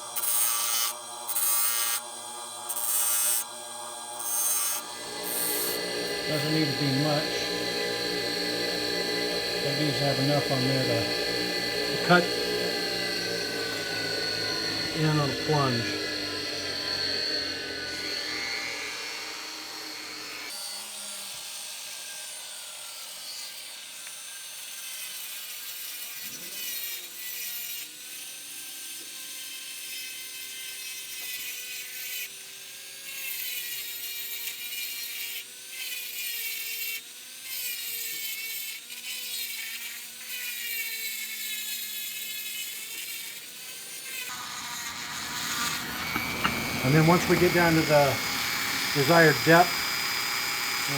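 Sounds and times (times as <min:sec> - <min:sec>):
rotary tool motor whine: 0:00.0 - 0:50.9
gritty scraping of firebrick: 0:44.3 - 0:50.9.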